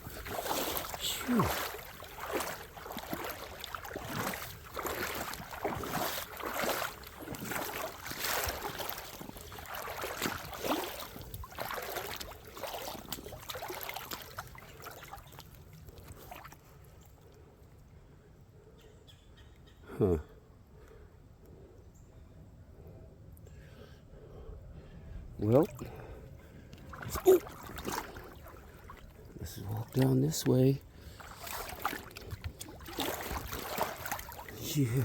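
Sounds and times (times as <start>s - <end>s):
footsteps on wet ground: 0.0s - 16.6s, 26.7s - 35.0s.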